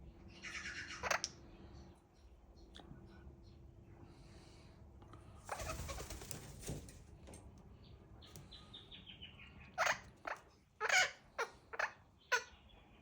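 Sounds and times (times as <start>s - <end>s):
wings flapping: 5.5s - 7.1s
parrots screeching: 9.8s - 12.5s.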